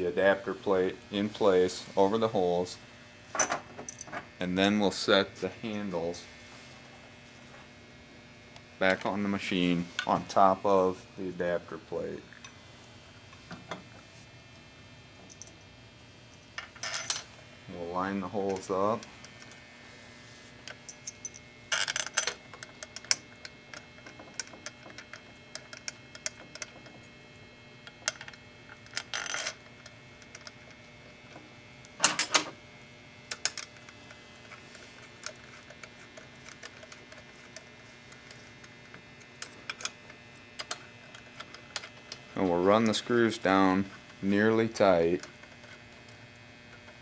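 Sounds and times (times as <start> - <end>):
small metal parts clicking and clinking: 16.6 - 17.2, 20.8 - 27.0, 27.9 - 30.6.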